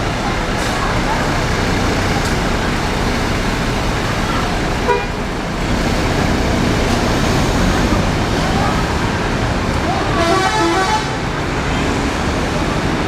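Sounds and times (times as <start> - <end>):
bus engines and traffic: 0.0 - 13.0
horn toot: 4.8 - 5.2.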